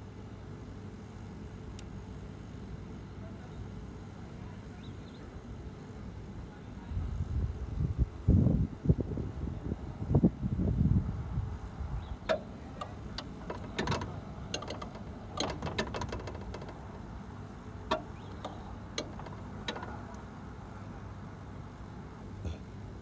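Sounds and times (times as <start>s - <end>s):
light clicks and taps: 12.3s - 17.2s, 17.9s - 20.3s.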